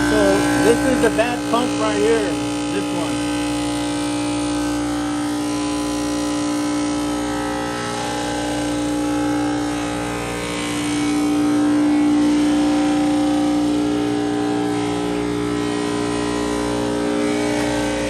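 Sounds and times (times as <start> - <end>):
air dryer machine humming: 0.0 - 3.8.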